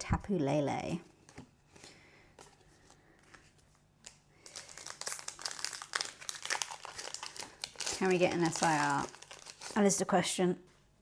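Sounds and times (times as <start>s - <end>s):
foil wrapper crinkling and tearing: 4.0s - 10.1s.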